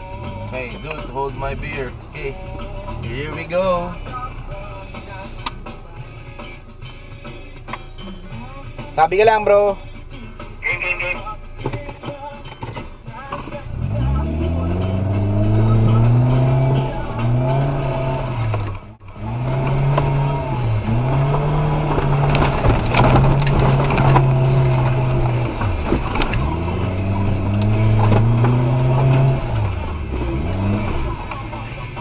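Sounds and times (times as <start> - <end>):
car engine revving under load: 0.0 - 8.6, 11.3 - 32.0
knocks and clatter: 18.4 - 31.4.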